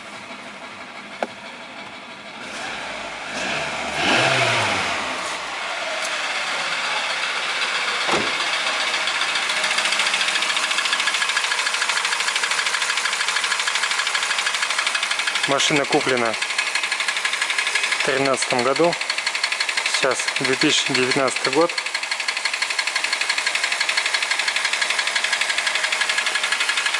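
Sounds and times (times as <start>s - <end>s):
car engine running: 0.0s - 26.9s
fast even engine knocking: 7.1s - 26.9s.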